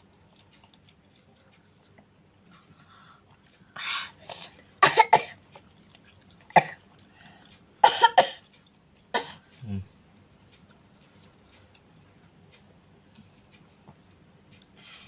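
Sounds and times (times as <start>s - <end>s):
person coughing: 4.8s - 5.4s, 7.8s - 8.4s.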